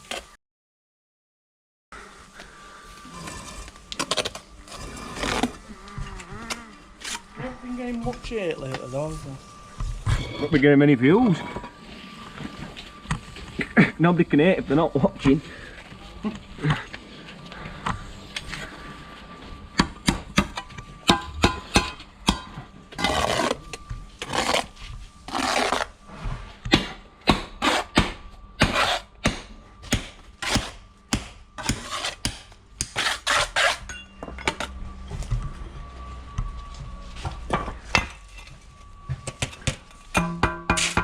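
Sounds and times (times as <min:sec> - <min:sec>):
trowel scraping mortar: 0:03.1 - 0:05.6, 0:23.0 - 0:25.9, 0:28.7 - 0:29.1, 0:31.6 - 0:33.9.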